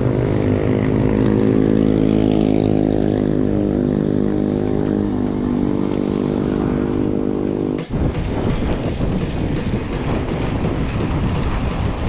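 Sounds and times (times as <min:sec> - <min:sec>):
vehicle engine running: 0:07.8 - 0:12.0.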